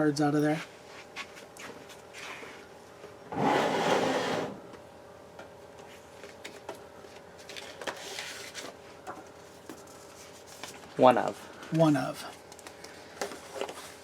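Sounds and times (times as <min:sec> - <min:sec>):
rustling scrape of card: 0:07.5 - 0:08.7.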